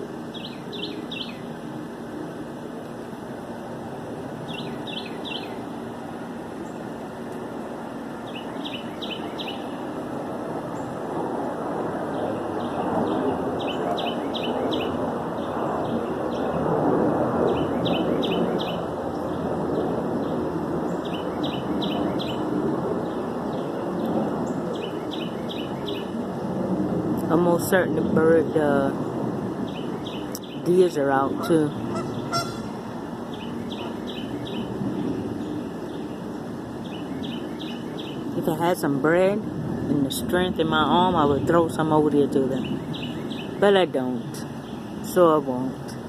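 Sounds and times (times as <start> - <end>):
songbird singing: 0.0 - 1.6, 4.4 - 11.1, 12.0 - 16.8, 17.4 - 26.3, 27.2 - 46.0.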